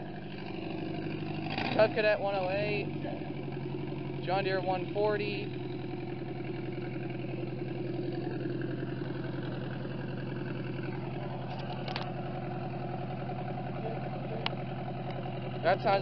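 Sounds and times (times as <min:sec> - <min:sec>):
tractor engine idling: 0:00.0 - 0:16.0.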